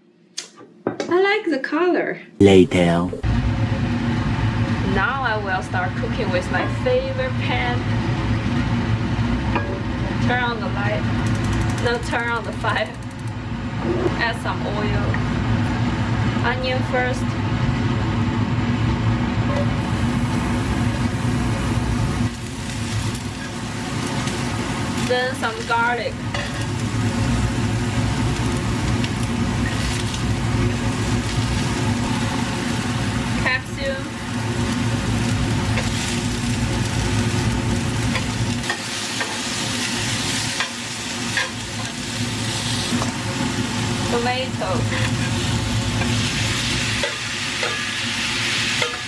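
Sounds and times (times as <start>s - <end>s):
onion sizzling in hot oil: 19.9s - 49.0s.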